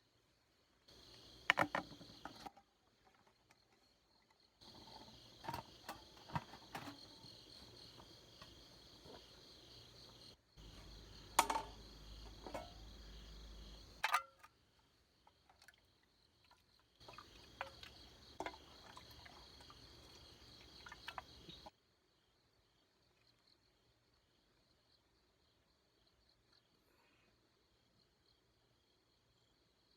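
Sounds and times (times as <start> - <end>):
insects chirping: 0.9 - 2.5, 3.2 - 23.8.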